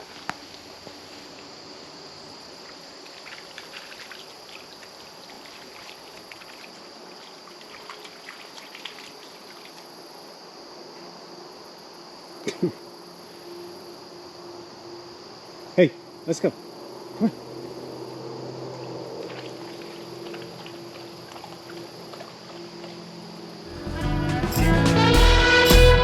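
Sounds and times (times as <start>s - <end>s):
insects droning: 0.0s - 25.0s
short sharp sounds: 23.7s - 26.0s.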